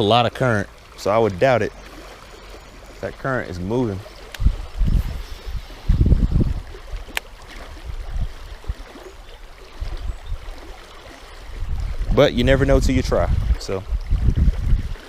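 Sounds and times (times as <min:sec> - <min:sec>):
low rumbles: 0:00.0 - 0:08.7
stream water rushing: 0:00.0 - 0:15.0.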